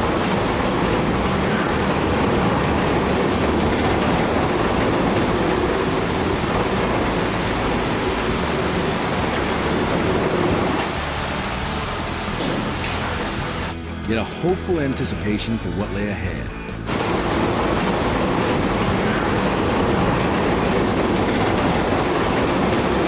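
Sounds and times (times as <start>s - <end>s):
building demolition rumbling: 0.0s - 13.8s, 16.8s - 23.0s.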